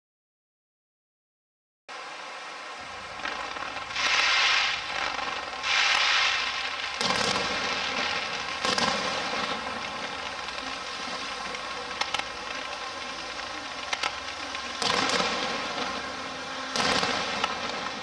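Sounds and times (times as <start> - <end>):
firework hissing crackles: 1.9 - 18.0
firework bangs with rumbling echo: 2.8 - 18.0.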